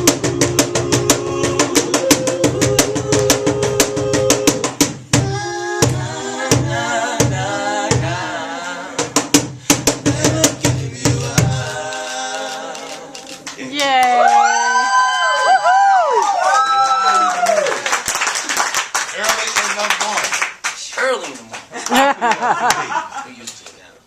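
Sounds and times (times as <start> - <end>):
drum kit beat: 0.0 - 14.0.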